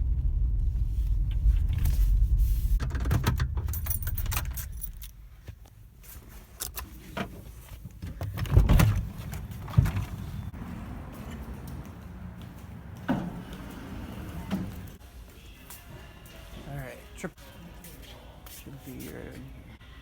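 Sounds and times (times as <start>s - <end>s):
low car rumble: 0.0s - 5.0s, 8.3s - 15.0s
keys jangling: 3.4s - 5.2s.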